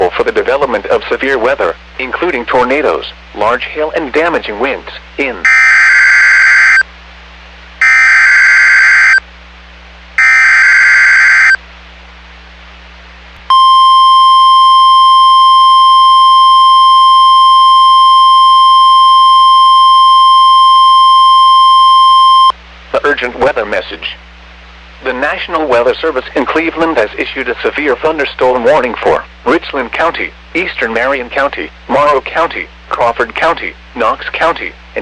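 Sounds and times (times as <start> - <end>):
digital data tone bursts: 5.4 - 6.8, 7.8 - 9.2, 10.2 - 11.6
steady warning alarm tone: 5.4 - 6.8, 7.8 - 9.2, 10.2 - 11.6, 13.5 - 22.6.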